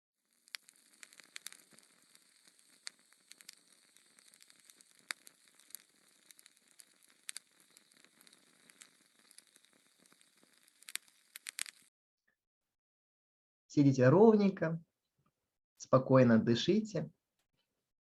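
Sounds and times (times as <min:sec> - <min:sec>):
crackling fire: 0:00.2 - 0:11.9.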